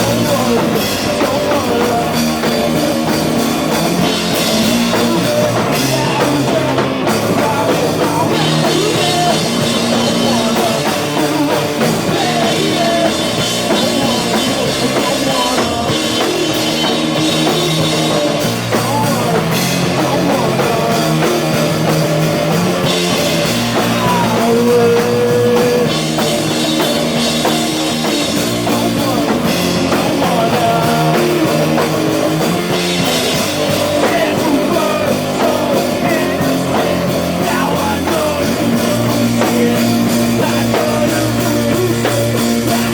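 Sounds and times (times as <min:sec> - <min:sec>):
live punk rock band: 0:00.0 - 0:42.9.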